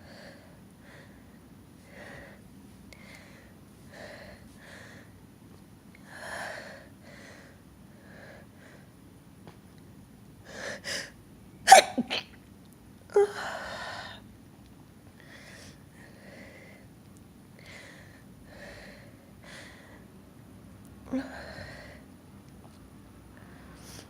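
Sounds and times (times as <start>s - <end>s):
person sneezing: 11.7s - 12.3s.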